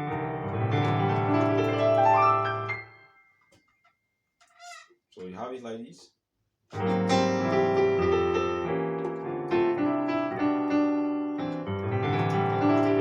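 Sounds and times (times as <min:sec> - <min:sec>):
piano arpeggios: 0:00.0 - 0:03.2, 0:06.8 - 0:13.0.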